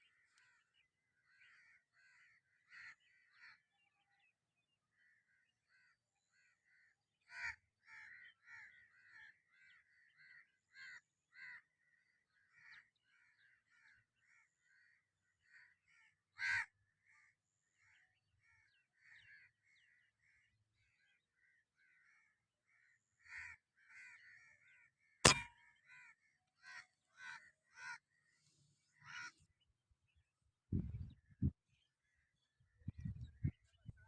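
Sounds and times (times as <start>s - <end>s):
airgun shot: 25.3s - 25.5s.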